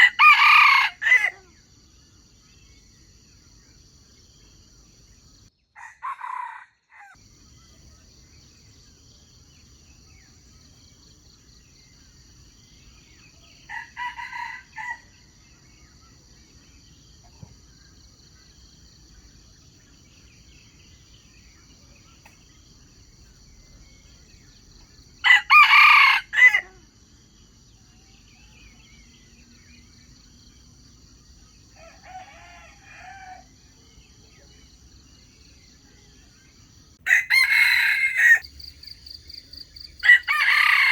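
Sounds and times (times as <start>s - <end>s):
roosters crowing: 0.0s - 1.4s, 5.8s - 7.2s, 13.6s - 15.2s, 25.2s - 26.8s, 31.8s - 33.5s, 37.0s - 40.9s.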